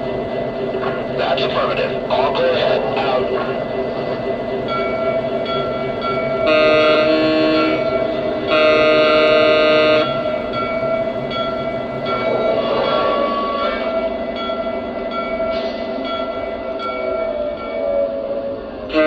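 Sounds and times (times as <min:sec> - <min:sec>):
diesel engine running: 0:00.0 - 0:12.6
locomotive air horn blasts: 0:06.1 - 0:13.9.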